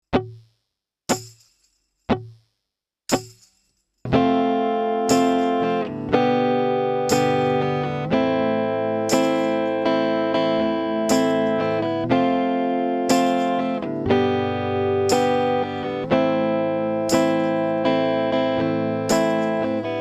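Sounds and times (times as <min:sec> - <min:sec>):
guitar playing chords: 0:04.1 - 0:20.0.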